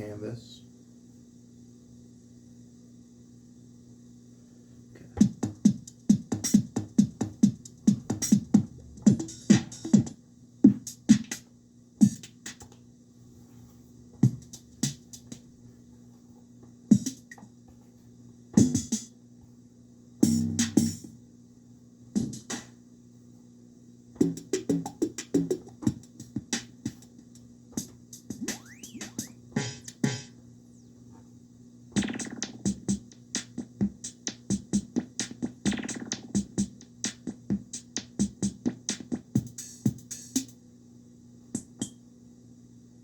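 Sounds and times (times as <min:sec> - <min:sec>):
electronic drum and synth hits: 0:05.2 - 0:10.1, 0:10.7 - 0:11.4, 0:18.6 - 0:19.1, 0:20.2 - 0:21.1, 0:24.2 - 0:27.1, 0:27.8 - 0:30.9, 0:32.0 - 0:40.5.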